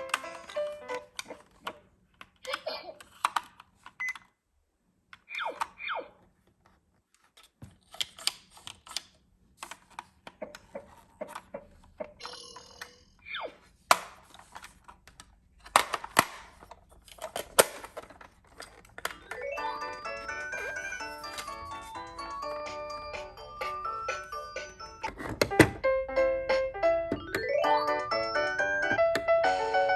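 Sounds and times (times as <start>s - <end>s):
plastic toys clicking and knocking: 0.0s - 4.3s, 5.1s - 13.0s, 13.8s - 19.5s, 25.0s - 25.8s.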